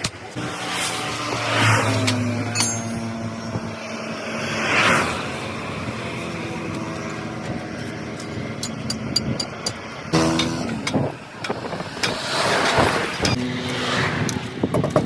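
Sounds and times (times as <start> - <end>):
vehicle engine running: 0.3 - 12.0.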